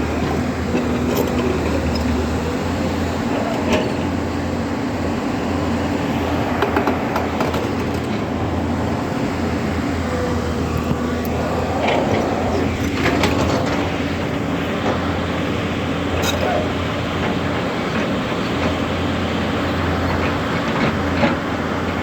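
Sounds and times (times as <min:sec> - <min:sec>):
diesel engine running: 0:00.0 - 0:22.0
metal clanks and knocks: 0:16.2 - 0:16.7.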